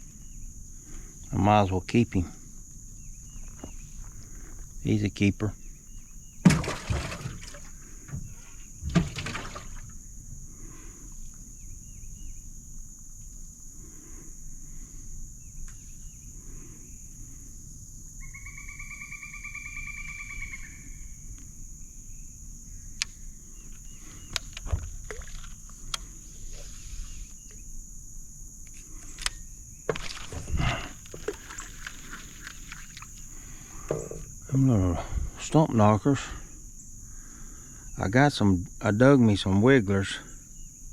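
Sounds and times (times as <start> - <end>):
high insect drone: 0.0 - 40.9
knocks and rustling in boat: 5.9 - 10.1, 24.1 - 25.8, 29.9 - 34.4.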